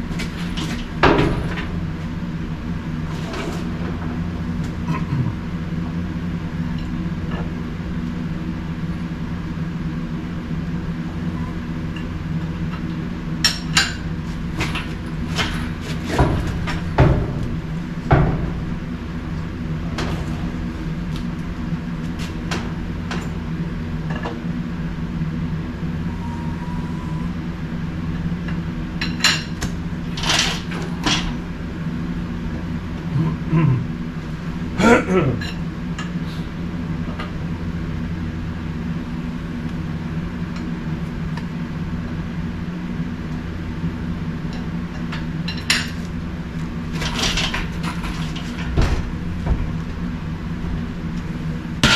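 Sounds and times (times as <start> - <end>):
steady low hum: 0.0 - 51.9
tools and parts clanking: 46.9 - 49.6.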